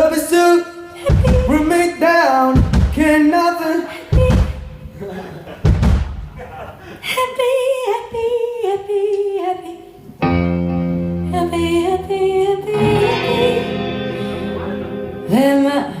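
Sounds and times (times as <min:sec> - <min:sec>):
person singing: 0:00.0 - 0:04.6, 0:11.1 - 0:16.0
band playing loud held chord: 0:12.7 - 0:15.7.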